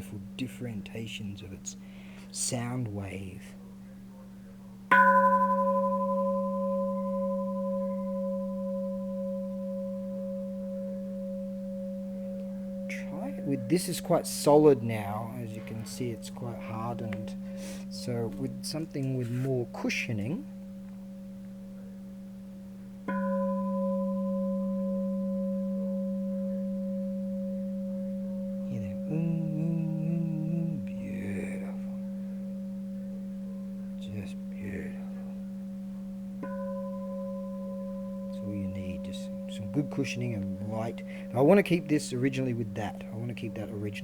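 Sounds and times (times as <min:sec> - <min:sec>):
temple bell ringing: 0:04.9 - 0:19.3, 0:23.1 - 0:29.7, 0:36.4 - 0:44.0.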